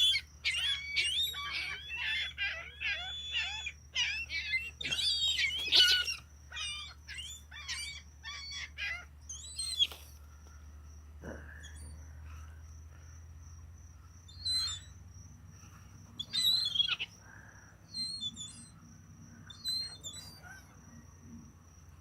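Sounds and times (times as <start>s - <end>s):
gulls calling: 0.0s - 10.1s, 16.2s - 18.8s.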